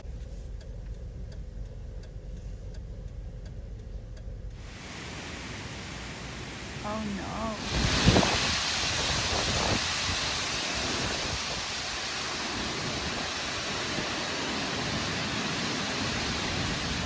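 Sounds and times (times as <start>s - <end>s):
gusts buffeting microphone: 7.3s - 17.0s
storm wind rushing: 7.3s - 17.0s.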